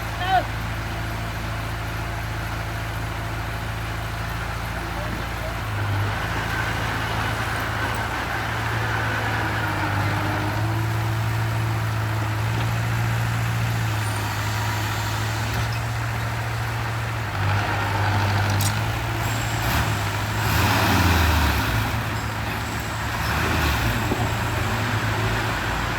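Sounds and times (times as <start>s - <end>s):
heavy vehicle engine humming: 0.0s - 25.9s.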